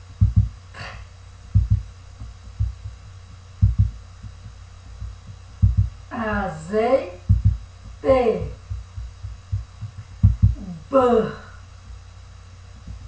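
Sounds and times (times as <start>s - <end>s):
low double thumps: 0.0s - 0.7s, 1.4s - 10.9s
low hum: 0.0s - 13.0s.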